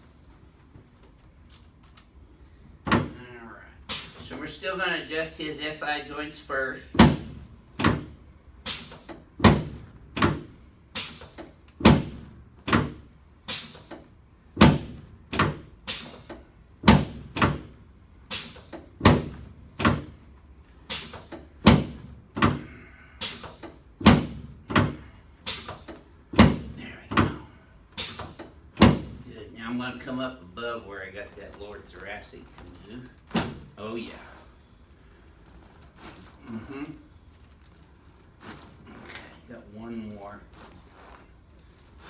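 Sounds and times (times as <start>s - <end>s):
sharp knocks of chiropractic adjustment: 6.9s - 14.0s, 14.6s - 20.2s, 20.9s - 29.2s.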